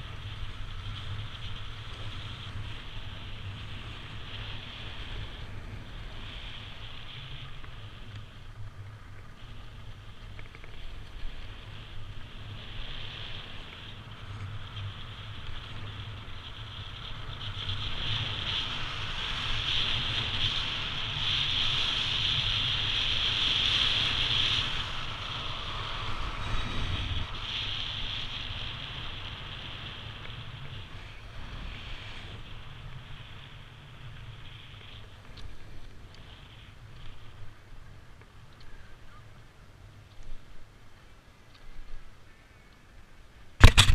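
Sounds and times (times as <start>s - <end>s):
wind rumbling on microphone: 0.0s - 43.9s
snow hissing under skis: 11.3s - 36.6s.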